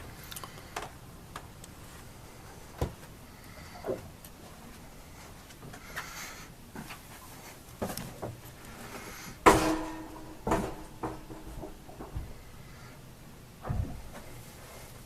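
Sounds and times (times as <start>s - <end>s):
knocks and clicks of handling: 9.5s - 12.3s.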